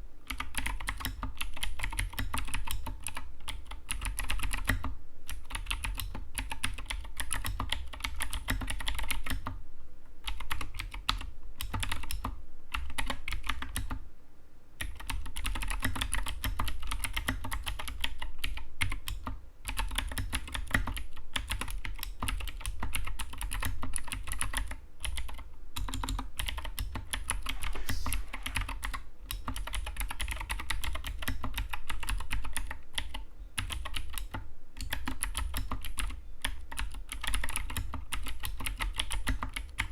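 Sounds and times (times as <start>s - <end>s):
mechanical keyboard typing: 0.3s - 9.6s, 10.2s - 14.0s, 14.8s - 39.9s.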